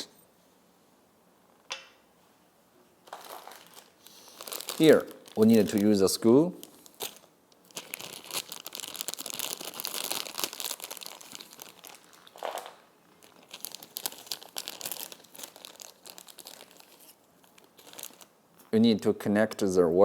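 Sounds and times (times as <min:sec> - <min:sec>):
plastic packaging crinkling: 0:03.0 - 0:18.8.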